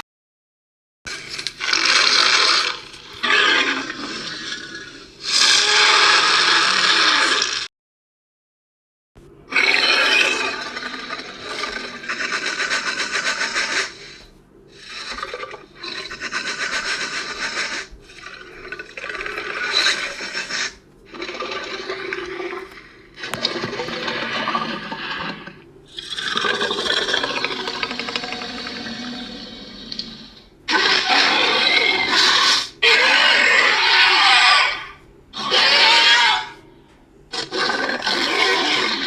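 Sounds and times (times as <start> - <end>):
harsh rasping scraping: 9.6 - 30.0.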